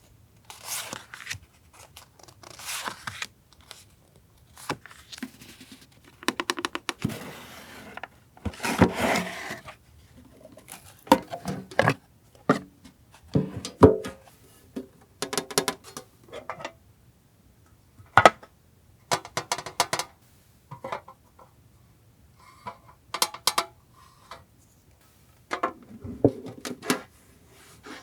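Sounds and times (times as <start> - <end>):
paper and plastic crinkling: 0.5 - 6.2
sliding rustle: 7.0 - 9.8.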